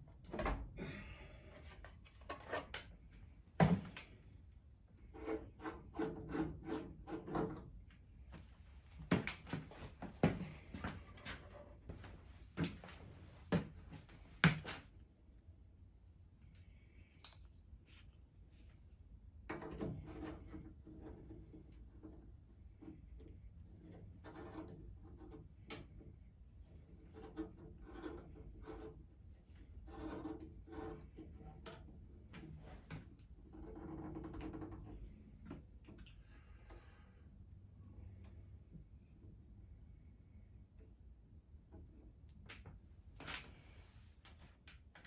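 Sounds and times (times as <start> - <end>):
rubbing and scraping: 5.0 - 7.6, 26.8 - 31.7.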